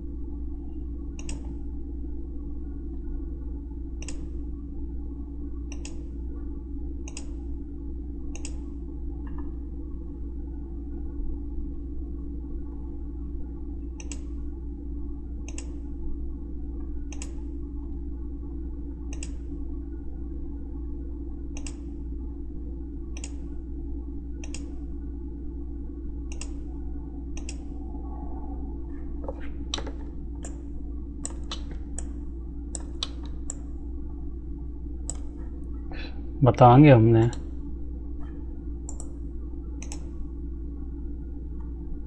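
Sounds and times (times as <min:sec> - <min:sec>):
low electrical hum: 0:00.0 - 0:42.0
computer mouse clicking: 0:01.2 - 0:01.5, 0:04.0 - 0:04.3, 0:05.7 - 0:06.0, 0:07.0 - 0:07.4, 0:08.3 - 0:08.6, 0:14.0 - 0:14.3, 0:15.4 - 0:15.8, 0:17.1 - 0:17.4, 0:19.1 - 0:19.4, 0:21.6 - 0:21.9, 0:23.2 - 0:23.4, 0:24.4 - 0:24.8, 0:26.3 - 0:26.6, 0:27.4 - 0:27.7, 0:29.2 - 0:30.6, 0:31.2 - 0:33.7, 0:35.0 - 0:35.4, 0:38.9 - 0:39.2, 0:39.8 - 0:40.1.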